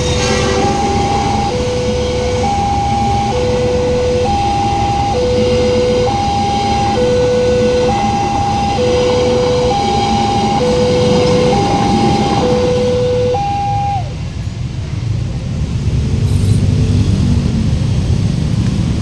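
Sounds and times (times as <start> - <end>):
two-tone warning siren: 0.0 - 14.2
train rumble: 0.0 - 19.0.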